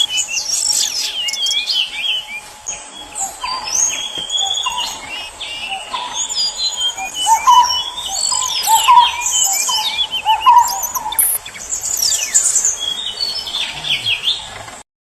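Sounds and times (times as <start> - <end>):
songbirds singing: 0.0 - 14.8.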